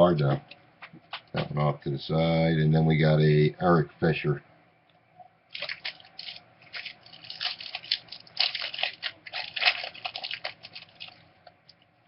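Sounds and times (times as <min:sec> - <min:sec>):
wrapper tearing and crinkling: 0:05.5 - 0:11.3.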